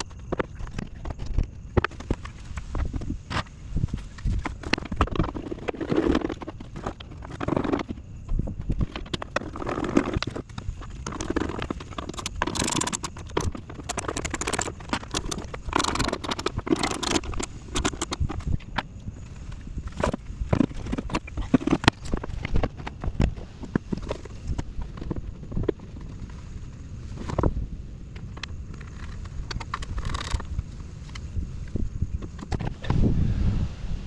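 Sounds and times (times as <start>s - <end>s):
plastic fan shroud scraping: 0.0s - 26.4s
hand tools clicking and rattling: 4.0s - 25.8s.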